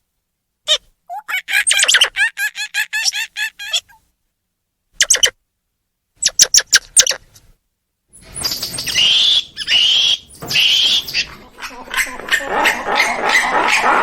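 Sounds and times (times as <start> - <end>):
rising squeaky monkey calls: 0.7 - 4.0, 8.2 - 14.0
monkeys chirping and twittering: 1.2 - 4.0, 8.1 - 14.0.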